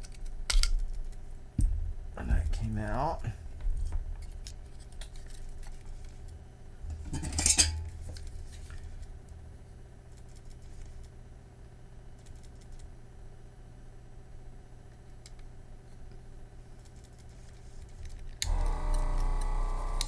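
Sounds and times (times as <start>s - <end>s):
steady low hum: 0.0s - 20.0s
small clicks: 16.8s - 20.0s
vacuum pump buzzing suction hiss: 18.4s - 20.0s.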